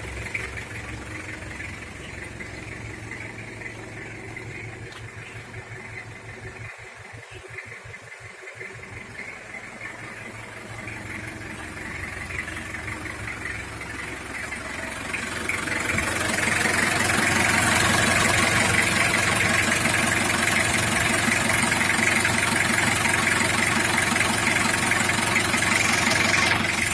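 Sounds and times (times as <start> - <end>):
diesel engine idling: 0.0 - 26.9.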